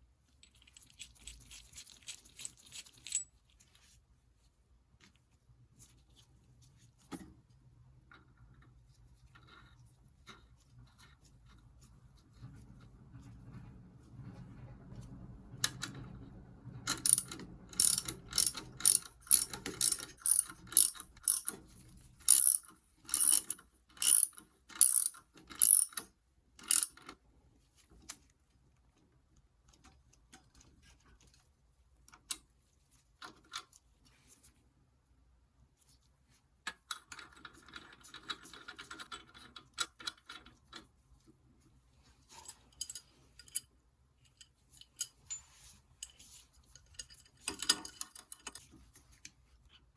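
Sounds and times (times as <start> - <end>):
rustling scrape: 0.6 - 7.1, 33.9 - 34.8, 41.0 - 43.4, 44.5 - 47.5
ratchet clicking: 16.9 - 21.6, 22.3 - 27.0.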